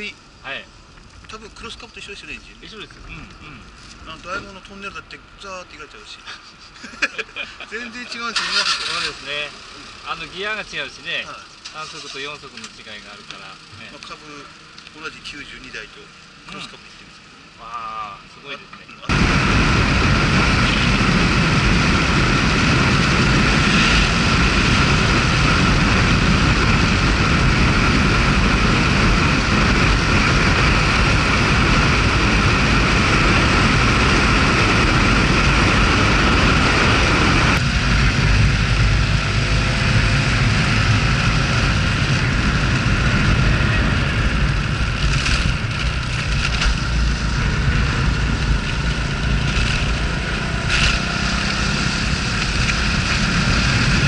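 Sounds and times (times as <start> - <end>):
rushing wind noise: 19.1 - 54.0
small motorcycle engine running: 19.1 - 54.0.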